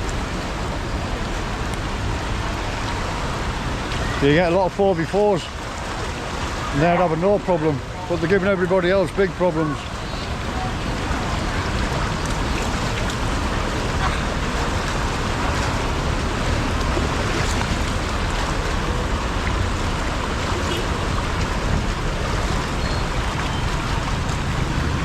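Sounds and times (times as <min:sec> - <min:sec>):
floodwater rushing and sloshing: 0:00.0 - 0:25.0
low rumble: 0:21.1 - 0:25.0.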